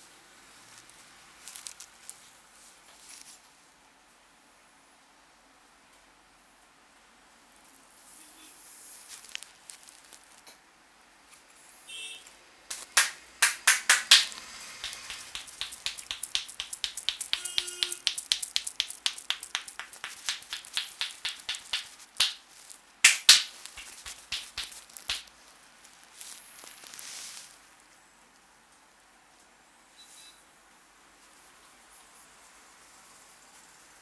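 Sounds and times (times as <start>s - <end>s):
fast patter of light taps: 12.7s - 22.4s, 23.0s - 25.3s
hands slapping head: 12.7s - 22.4s, 23.0s - 25.3s.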